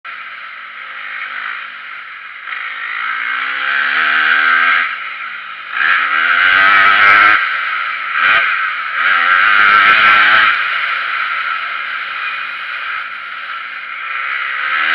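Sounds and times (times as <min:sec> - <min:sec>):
motocross bike engine revving: 0:00.1 - 0:14.9.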